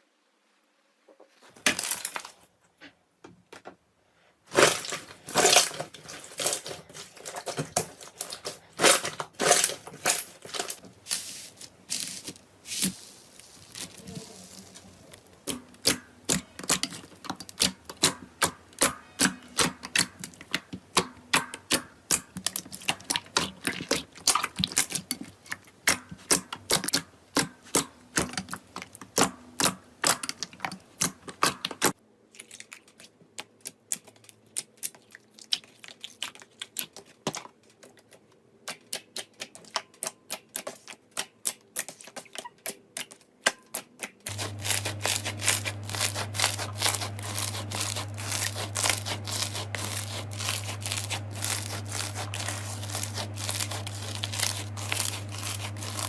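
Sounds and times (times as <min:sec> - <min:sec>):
slime crackling and popping: 0:04.6 - 0:27.0, 0:38.0 - 0:56.0.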